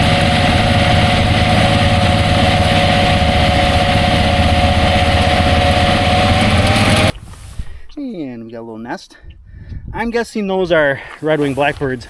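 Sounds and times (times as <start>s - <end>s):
vehicle engine whine and rumble: 0.0s - 7.2s.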